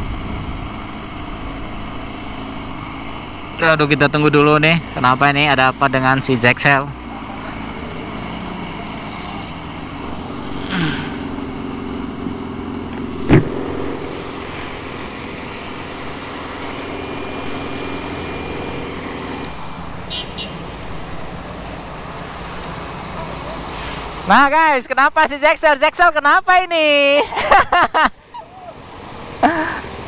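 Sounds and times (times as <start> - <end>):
vehicle humming on road: 0.0 - 30.0
sharp knock: 13.2 - 14.9.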